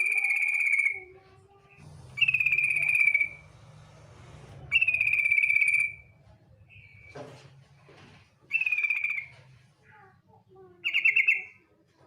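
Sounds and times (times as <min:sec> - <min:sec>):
bird rattling trill: 0:02.2 - 0:03.4, 0:04.7 - 0:06.0.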